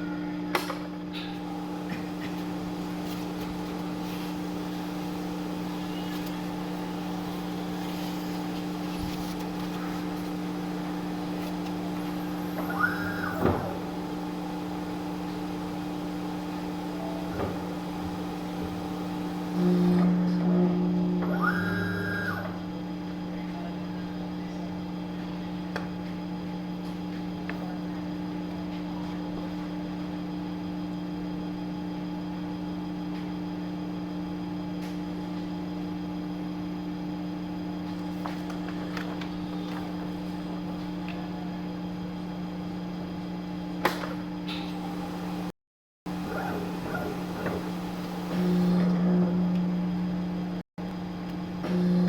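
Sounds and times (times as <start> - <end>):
electric motor humming: 1.4 - 22.6, 46.1 - 50.6, 51.6 - 52.0.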